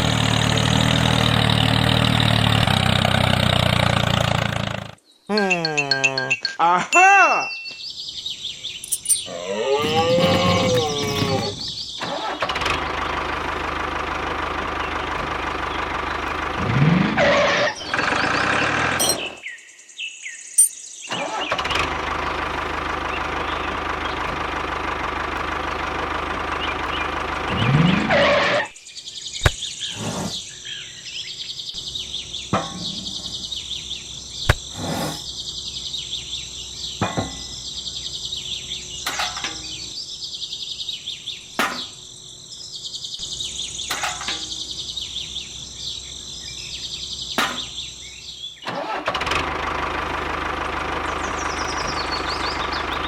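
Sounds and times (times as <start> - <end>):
small engine running: 0.0 - 5.0, 9.8 - 19.4, 21.1 - 28.7, 48.8 - 53.0
birds chirping: 4.3 - 48.7, 50.0 - 53.0.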